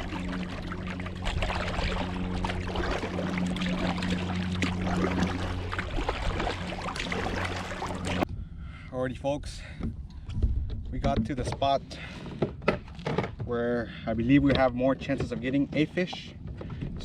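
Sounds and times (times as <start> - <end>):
water splashing around kayak: 0.0 - 8.3
steady low hum: 0.0 - 11.0.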